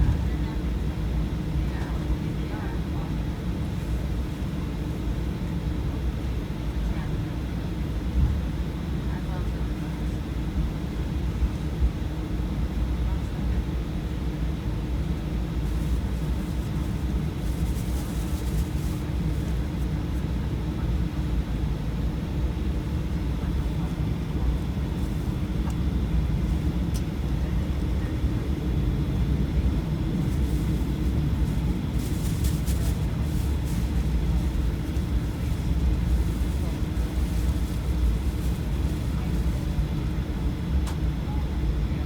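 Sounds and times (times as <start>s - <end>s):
aircraft engine drone in cabin: 0.0s - 42.0s
faint crackles: 30.2s - 39.6s.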